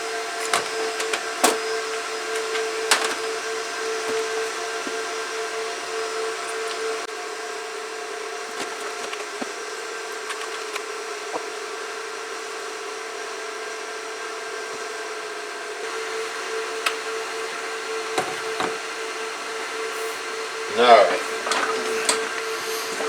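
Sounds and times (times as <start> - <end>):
server cooling fans whirring: 0.0 - 12.8, 15.6 - 23.0.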